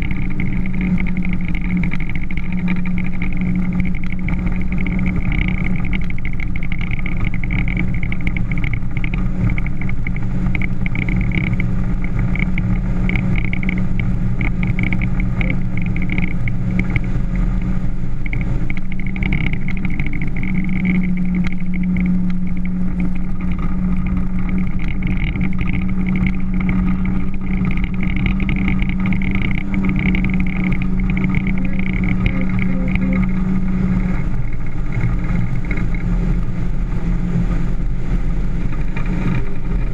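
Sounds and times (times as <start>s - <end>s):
motorboat engine drone: 0.0s - 39.9s
rushing water noise: 0.0s - 39.9s.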